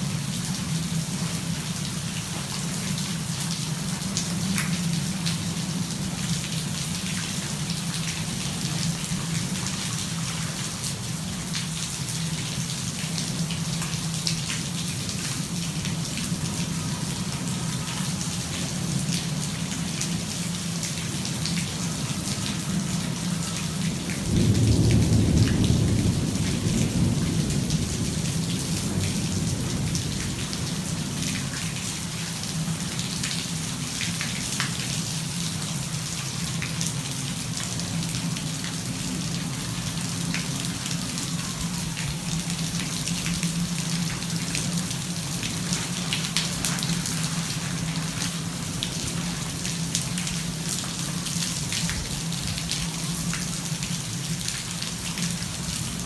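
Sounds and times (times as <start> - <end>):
heavy rain: 0.0 - 56.0
thunder rumbling: 23.7 - 32.2.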